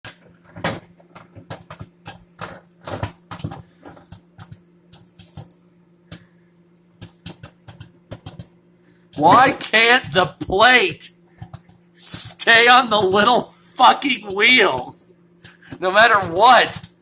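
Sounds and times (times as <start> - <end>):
steady low hum: 0.1 - 17.0.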